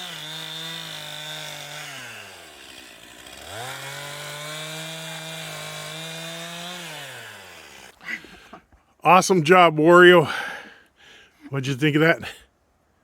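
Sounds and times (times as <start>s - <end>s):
chainsaw cutting wood: 0.0s - 8.6s.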